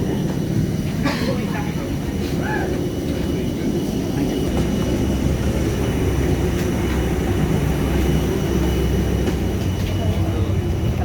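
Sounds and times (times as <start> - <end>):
low rumble of airport machinery: 0.0 - 11.0.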